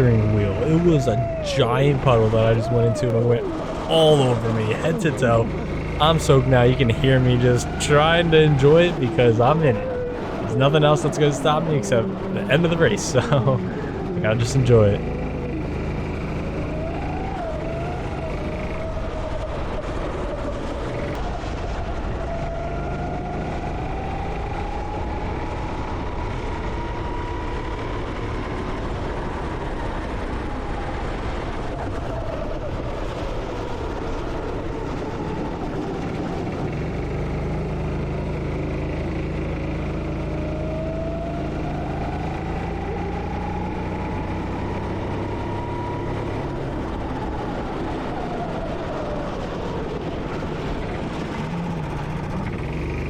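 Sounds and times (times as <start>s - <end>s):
go-kart engine accelerating: 0.0s - 53.0s
steady wash of noise: 1.6s - 15.0s.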